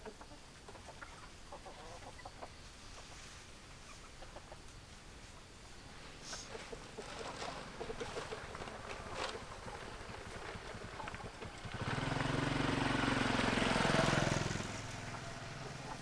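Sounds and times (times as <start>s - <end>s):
vehicle engine passing: 6.9s - 16.0s.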